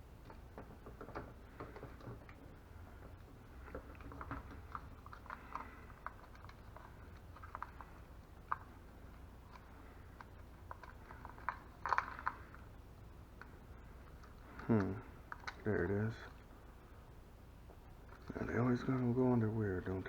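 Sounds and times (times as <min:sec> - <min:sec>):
low steady hum: 0:00.0 - 0:20.0
tape crinkling and clicking: 0:00.2 - 0:16.4.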